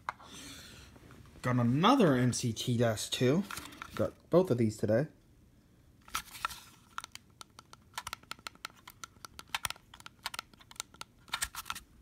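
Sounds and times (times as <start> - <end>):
plastic remote clicks and taps: 6.9 - 11.8.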